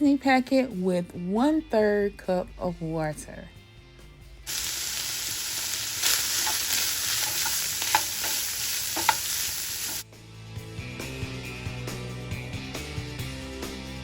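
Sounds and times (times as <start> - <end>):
meat sizzling in a pan: 4.5 - 10.0.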